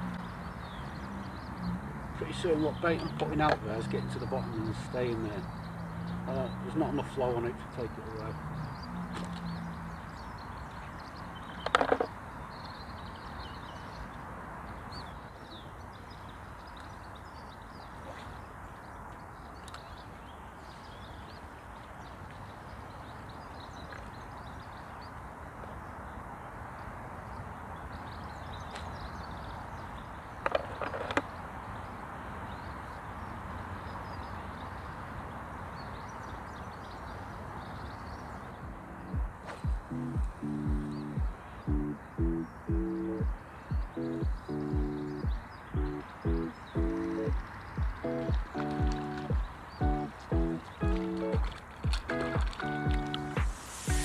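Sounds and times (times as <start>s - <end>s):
outdoor background noise: 0.0s - 54.0s.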